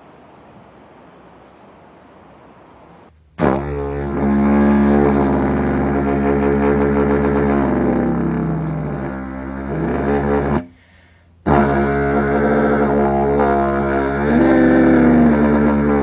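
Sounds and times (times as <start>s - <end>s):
buzzing brass horn drone: 3.4s - 10.7s, 11.4s - 16.0s.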